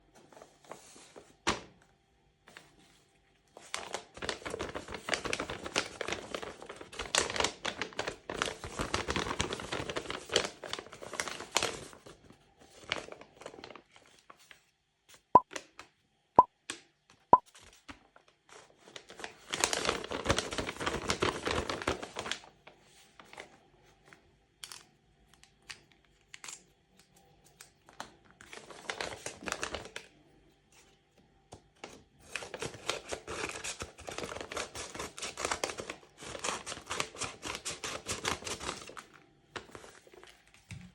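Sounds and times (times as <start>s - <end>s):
packaging tearing and rustling: 3.7s - 12.0s, 19.0s - 22.4s, 28.0s - 30.0s.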